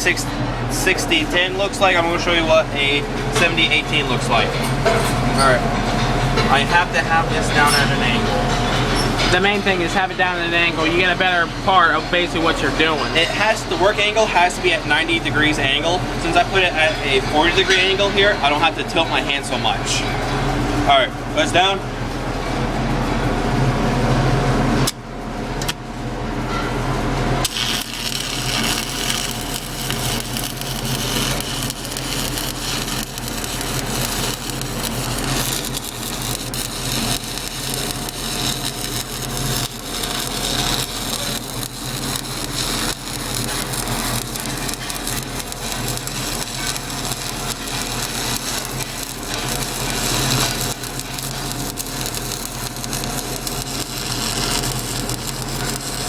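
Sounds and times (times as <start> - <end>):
steady hum: 18.0 - 56.0
welding arc crackling: 27.4 - 56.0.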